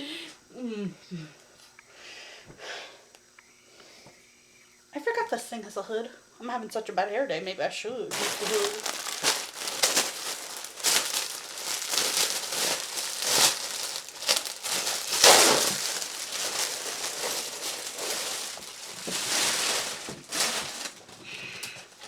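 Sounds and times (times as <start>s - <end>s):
plastic packaging crinkling: 8.1s - 22.0s.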